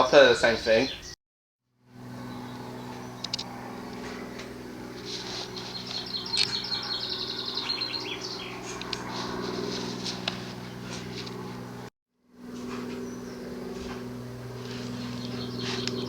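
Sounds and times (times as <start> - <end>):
songbird trilling: 0.0 - 1.2, 5.4 - 8.8, 14.9 - 16.0
steady low hum: 1.8 - 16.0.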